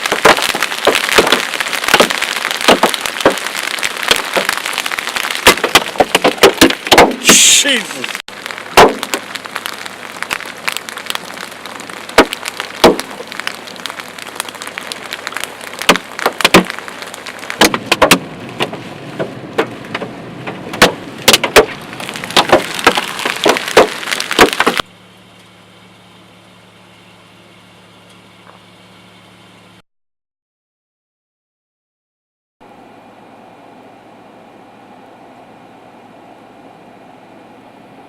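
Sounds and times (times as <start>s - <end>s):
hailstones pounding on a vehicle: 0.0s - 24.9s
low vehicle hum: 0.0s - 29.8s, 32.6s - 38.0s.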